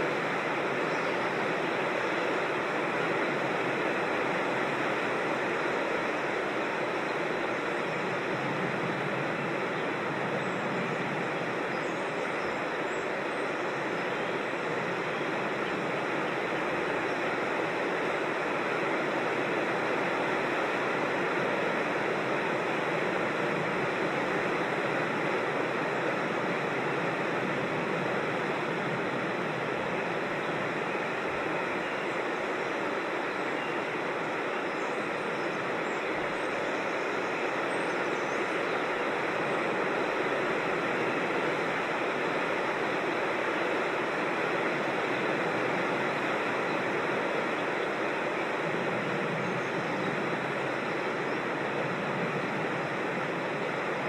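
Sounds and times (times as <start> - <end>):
creek water flowing: 0.0 - 54.0.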